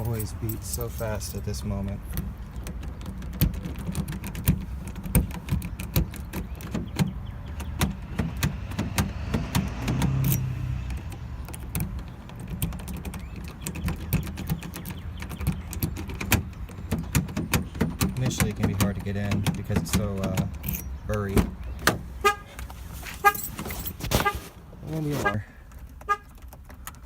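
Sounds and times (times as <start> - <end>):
keys rattling in a lock: 0.0 - 1.6, 23.2 - 24.0.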